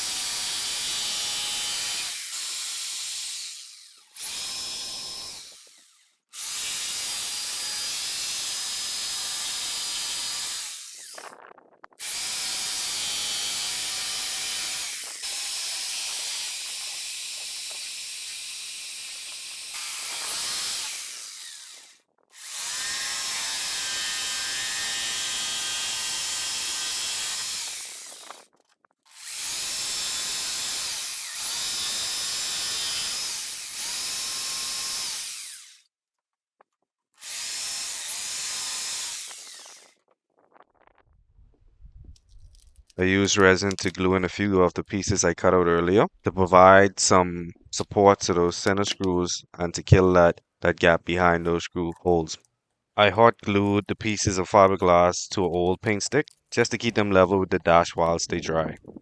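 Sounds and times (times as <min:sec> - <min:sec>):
power tool cutting fiberglass: 0:00.0 - 0:11.4, 0:12.0 - 0:28.5, 0:29.1 - 0:35.8, 0:37.2 - 0:39.9.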